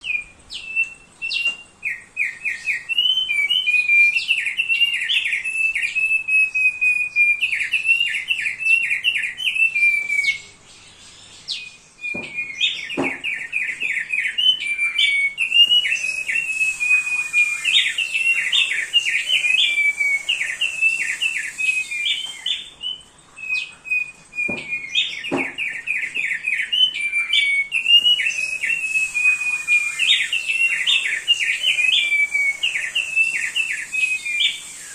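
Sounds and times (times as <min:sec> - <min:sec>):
bird singing whistled notes: 0:00.0 - 0:34.9
faint knocks: 0:12.1 - 0:14.0, 0:24.4 - 0:25.8.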